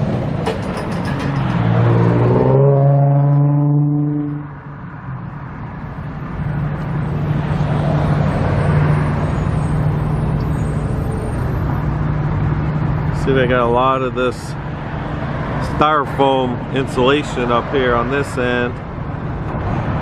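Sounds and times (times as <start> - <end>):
passing traffic noise: 0.0 - 20.0
vehicle engine accelerating past: 1.6 - 4.6.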